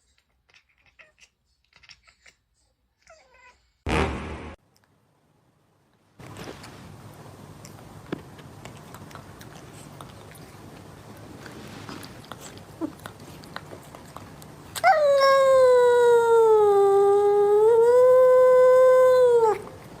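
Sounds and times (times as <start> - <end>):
cat yowling: 14.8 - 19.7.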